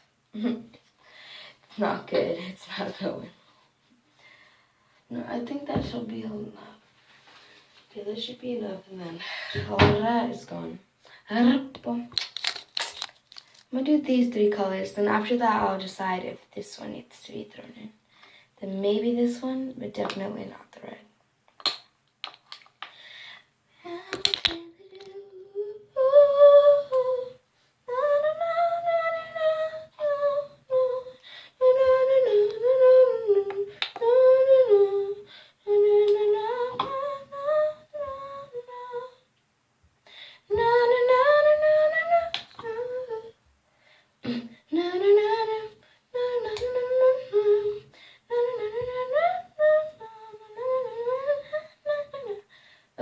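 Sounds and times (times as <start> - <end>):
girl humming: 0.3 - 0.8.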